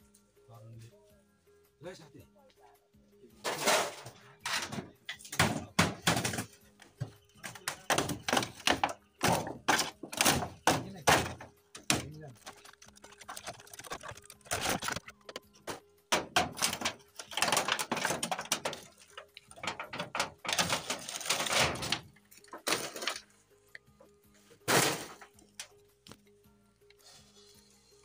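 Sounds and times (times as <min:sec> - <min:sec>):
faint background music: 0:00.0 - 0:28.0
material crashing and scraping: 0:03.4 - 0:06.6, 0:07.4 - 0:23.2, 0:24.6 - 0:25.5
debris falling: 0:03.5 - 0:23.3, 0:24.6 - 0:25.8.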